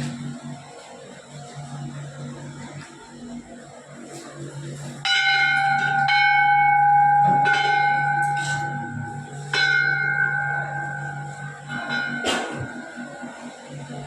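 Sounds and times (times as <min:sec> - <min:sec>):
temple bell ringing: 0:05.0 - 0:14.0.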